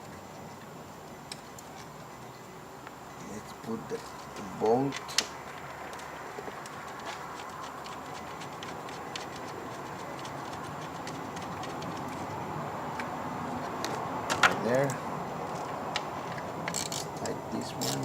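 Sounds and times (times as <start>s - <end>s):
steady background noise: 0.0s - 18.0s
hand tools clicking: 16.7s - 18.0s.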